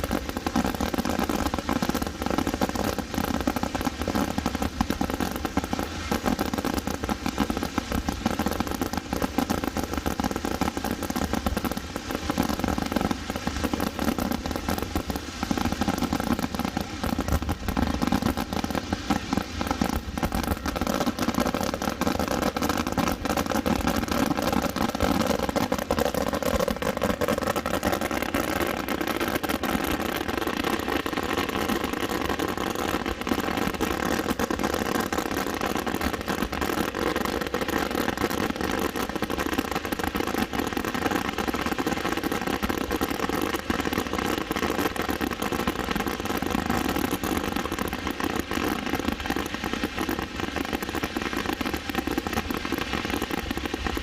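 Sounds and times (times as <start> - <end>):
fireworks bangs and crackling: 0.0 - 54.0.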